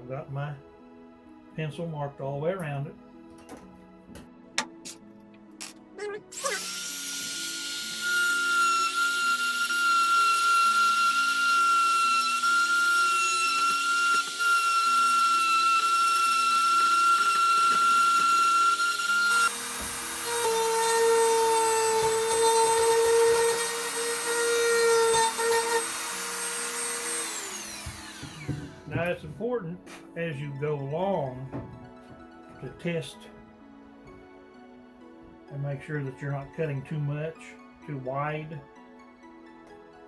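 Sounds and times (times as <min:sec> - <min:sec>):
background music: 0:00.0 - 0:40.0
rotary tool whining: 0:05.6 - 0:29.0.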